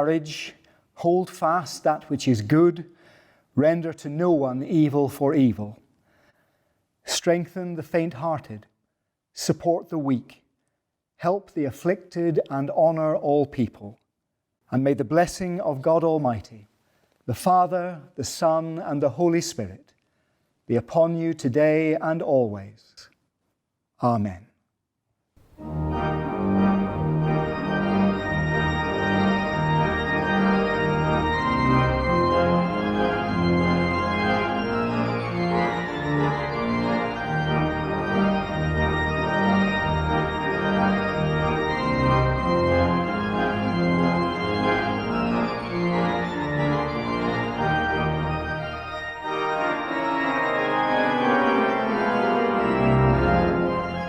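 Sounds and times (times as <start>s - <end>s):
organ playing chords: 0.0s - 0.5s, 25.4s - 54.0s.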